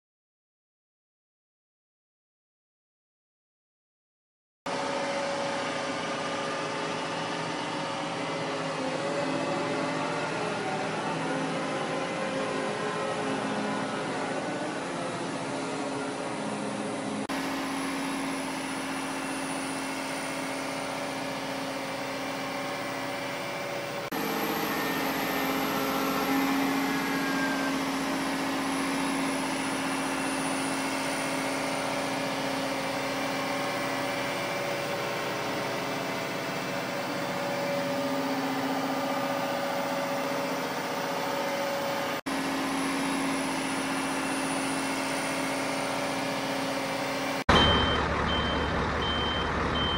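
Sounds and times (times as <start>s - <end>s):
heavy vehicle engine humming: 4.8s - 49.9s
faint high whine falling in pitch: 17.4s - 36.3s.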